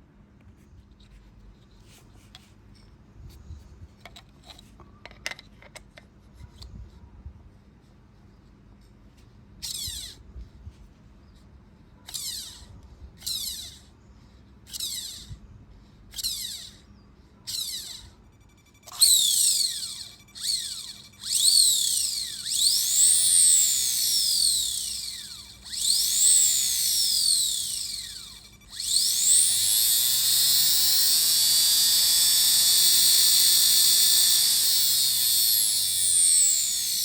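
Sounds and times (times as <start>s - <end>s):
electric fan motor whining: 9.6s - 10.6s, 12.0s - 37.0s.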